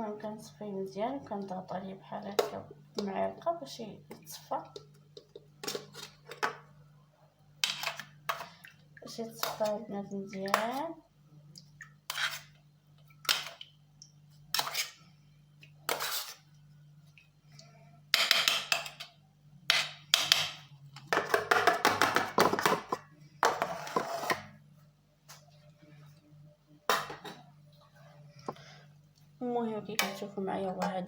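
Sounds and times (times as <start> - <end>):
spoon scraping a strainer: 12.1 - 12.5, 14.5 - 15.0, 15.9 - 16.5.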